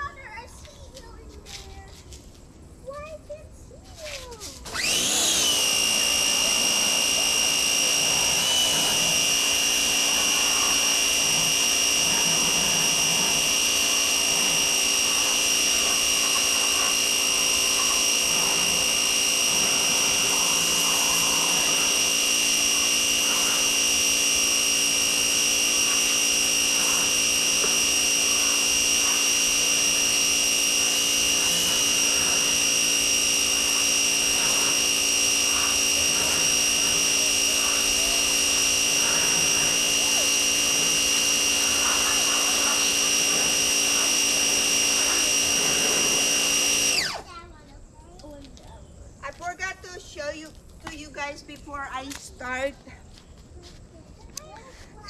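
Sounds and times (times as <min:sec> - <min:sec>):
pressure washer high-pitched whine: 0:04.2 - 0:47.3.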